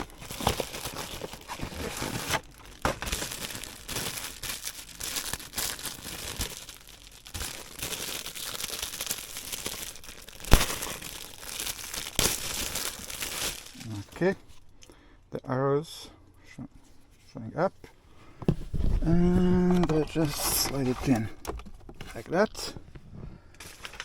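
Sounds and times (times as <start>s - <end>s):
packaging crinkling and tearing: 0.0s - 14.6s, 18.8s - 22.5s, 23.6s - 24.0s.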